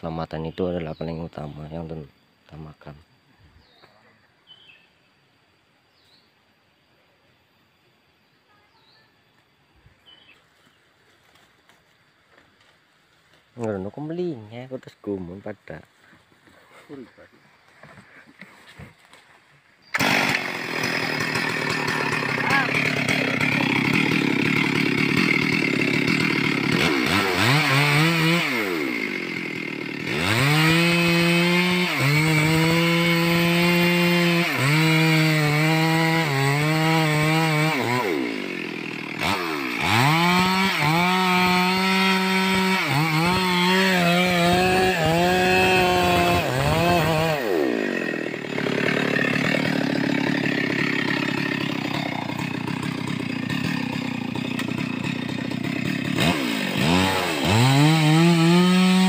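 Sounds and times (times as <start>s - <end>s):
chainsaw cutting wood: 17.7s - 59.0s.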